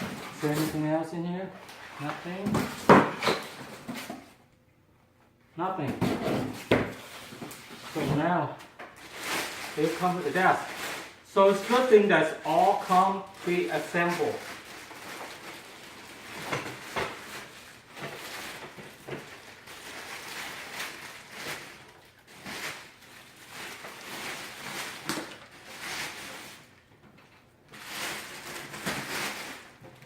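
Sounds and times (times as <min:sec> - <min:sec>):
packaging rustling: 0:07.0 - 0:26.8, 0:27.7 - 0:30.0.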